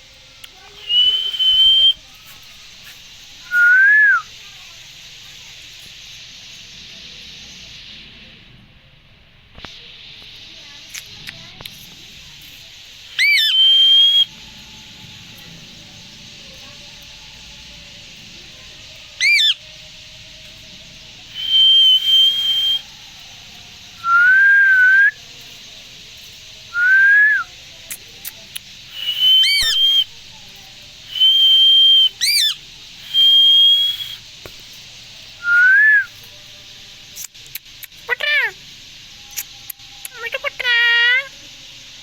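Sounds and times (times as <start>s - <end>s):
parrot whistling: 0.8s - 2.0s, 13.1s - 14.3s, 19.2s - 19.6s, 21.3s - 22.9s, 24.0s - 25.2s, 26.7s - 27.5s, 28.9s - 30.1s, 31.1s - 34.3s, 35.4s - 36.1s
parrot sharp chirps: 13.1s - 14.3s, 19.2s - 19.6s, 21.3s - 22.8s, 28.9s - 30.1s, 31.1s - 34.2s.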